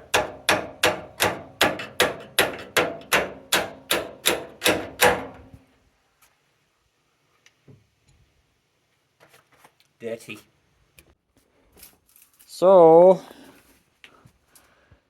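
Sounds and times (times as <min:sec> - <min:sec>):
hammer striking steel: 0:00.0 - 0:05.6.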